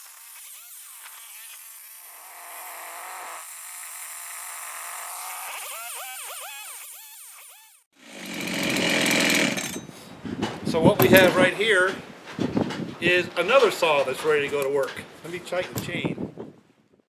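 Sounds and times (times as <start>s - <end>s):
chainsaw revving: 0.0s - 7.3s, 8.0s - 9.9s.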